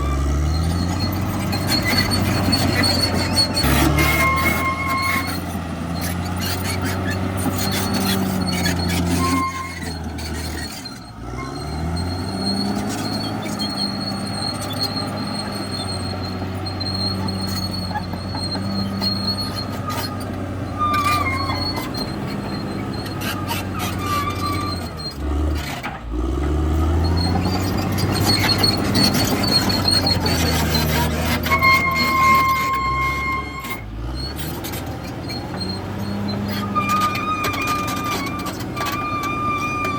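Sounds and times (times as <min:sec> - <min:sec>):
bulldozer diesel engine running: 0:00.0 - 0:39.9
tracks squealing and clanking: 0:00.0 - 0:39.9.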